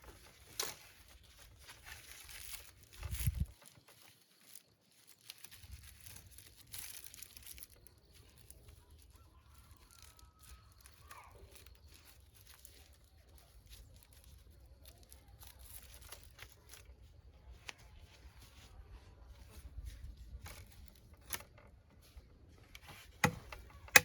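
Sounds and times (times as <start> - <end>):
faint chicken calls: 8.3 - 12.1
small clicks: 20.4 - 24.0.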